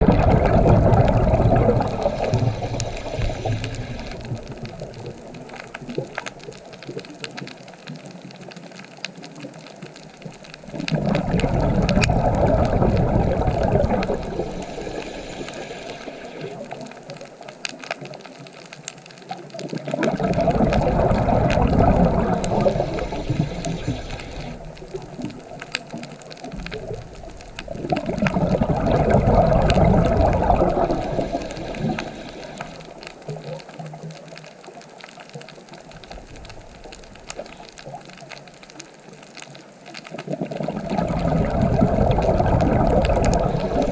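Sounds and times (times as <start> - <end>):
sea waves breaking: 0.0 - 6.3, 10.5 - 17.0, 19.9 - 33.2, 40.7 - 43.9.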